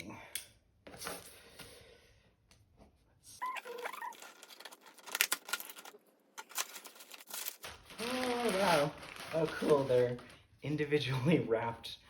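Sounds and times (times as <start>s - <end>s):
squeaky chirp-like sound: 3.4s - 4.2s
packaging rustling: 3.6s - 10.6s.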